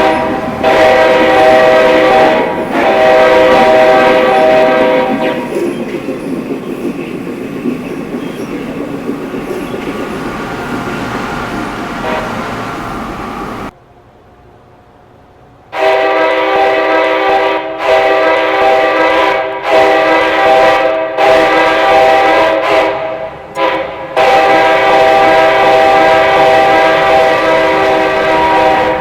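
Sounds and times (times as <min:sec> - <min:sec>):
locomotive air horn chord: 0:00.0 - 0:05.8, 0:11.9 - 0:13.7, 0:15.7 - 0:29.0
train wheel and rail noise: 0:00.0 - 0:29.0.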